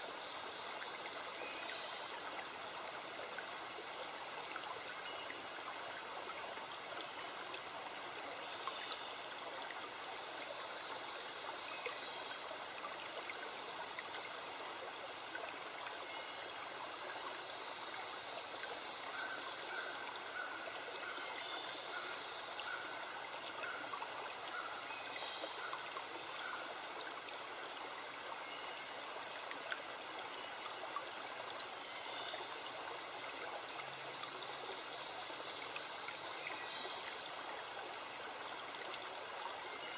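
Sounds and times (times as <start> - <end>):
flowing forest stream: 0.0 - 39.9.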